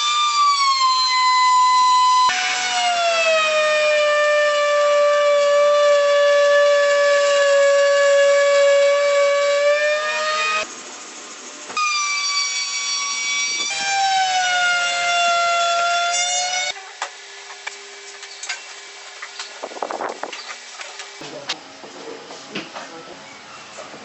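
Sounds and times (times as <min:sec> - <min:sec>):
power tool motor whine: 0:00.0 - 0:10.7, 0:11.6 - 0:16.8.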